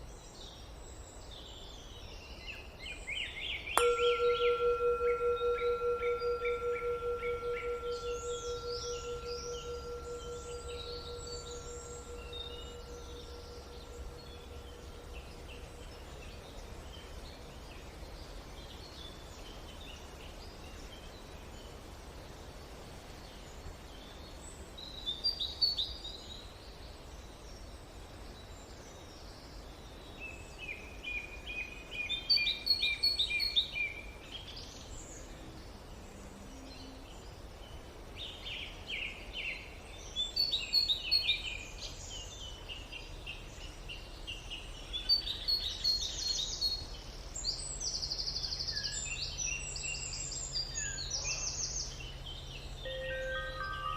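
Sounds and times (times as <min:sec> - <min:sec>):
songbirds chirping and trilling: 0:00.0 - 0:53.9
steady background hiss: 0:00.0 - 0:53.9
singing bowl ringing: 0:03.8 - 0:16.4, 0:52.9 - 0:53.9.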